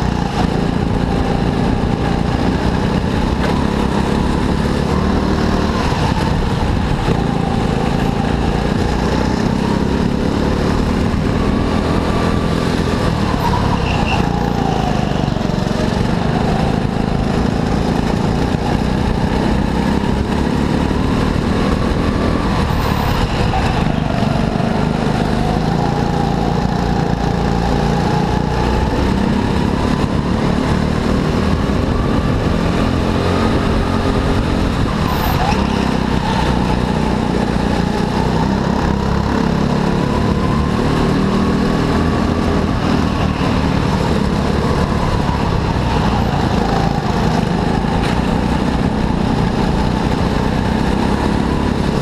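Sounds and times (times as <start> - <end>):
heavy low rumble: 0.0 - 19.4
kart engine revving: 0.0 - 52.0.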